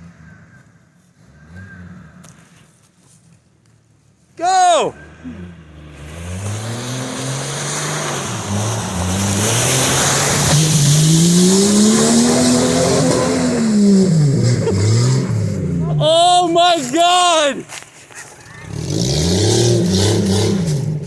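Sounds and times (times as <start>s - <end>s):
off-road vehicle engine revving: 0.0s - 2.6s, 4.9s - 16.5s, 18.4s - 21.0s
water and mud splashing: 6.0s - 17.0s.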